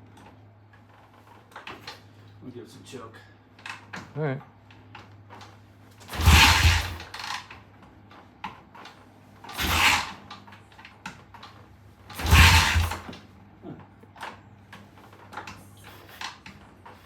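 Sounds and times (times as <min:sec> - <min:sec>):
motorcycle kick-start attempts: 0:03.6 - 0:07.6, 0:08.5 - 0:17.0.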